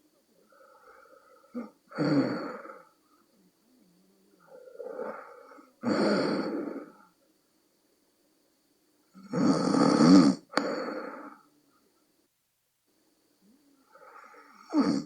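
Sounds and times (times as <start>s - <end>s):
person snoring: 0.5s - 3.0s, 4.0s - 7.1s, 9.2s - 11.5s, 13.8s - 15.0s.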